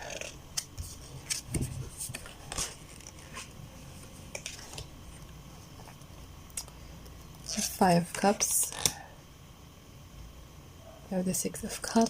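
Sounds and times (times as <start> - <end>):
cards rustling and tapping: 0.6 - 3.6.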